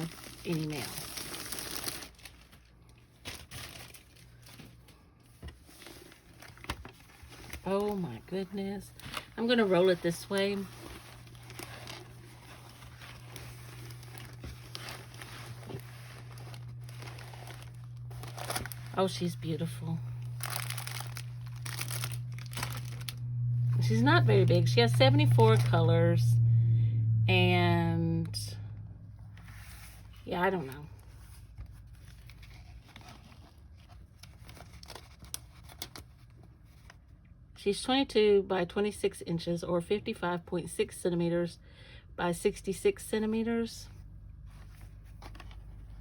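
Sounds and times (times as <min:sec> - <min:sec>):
steady low hum: 0:00.0 - 0:35.3
canvas rustling and ticking: 0:06.4 - 0:25.9.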